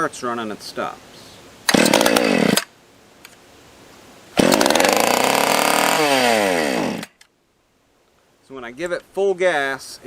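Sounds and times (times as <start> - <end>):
chainsaw engine bogging down: 1.7 - 2.6, 4.4 - 7.1.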